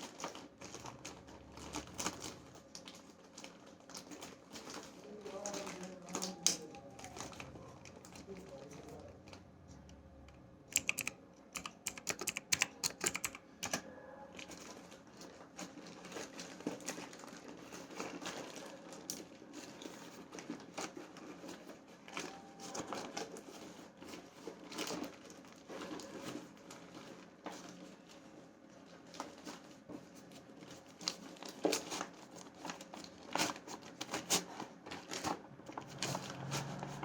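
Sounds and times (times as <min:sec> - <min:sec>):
packaging rustling and crinkling: 0:00.0 - 0:09.4, 0:14.5 - 0:37.0
plastic clicks and taps: 0:10.3 - 0:13.8.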